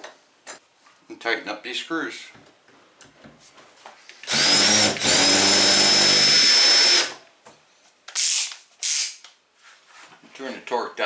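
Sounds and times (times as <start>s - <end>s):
power drill whining: 4.2s - 7.2s.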